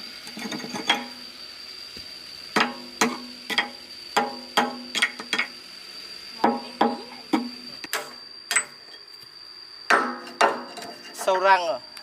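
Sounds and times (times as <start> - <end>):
hammer striking metal: 2.6 - 5.1, 9.9 - 10.8.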